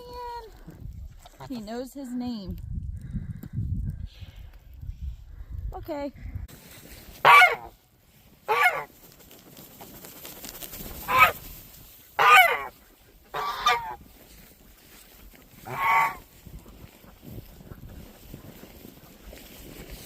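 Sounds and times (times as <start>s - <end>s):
goose honking: 7.2s - 7.7s, 8.5s - 8.9s, 11.0s - 11.4s, 12.2s - 14.0s, 15.6s - 16.3s.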